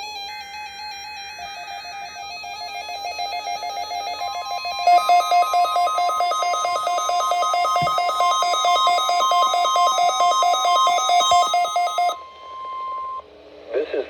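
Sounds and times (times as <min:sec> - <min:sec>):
steady warning alarm tone: 0:02.0 - 0:13.2
repeating electronic melody: 0:03.2 - 0:12.3
buzzy digital header tones: 0:04.2 - 0:12.2.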